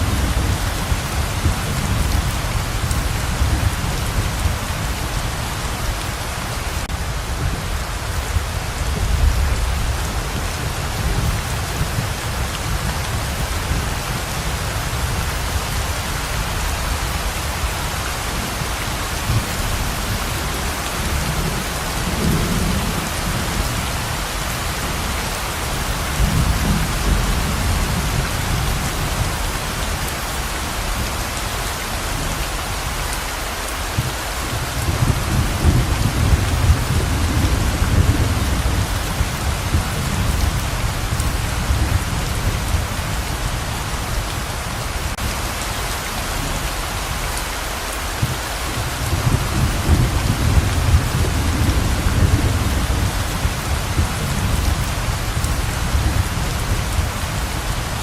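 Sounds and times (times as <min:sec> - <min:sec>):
pouring rain hissing: 0:00.0 - 0:58.0
thunder rolling: 0:48.3 - 0:57.1.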